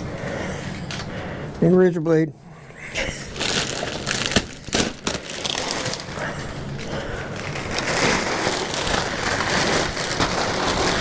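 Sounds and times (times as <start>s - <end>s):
packaging crumpling and scraping: 3.3s - 11.0s.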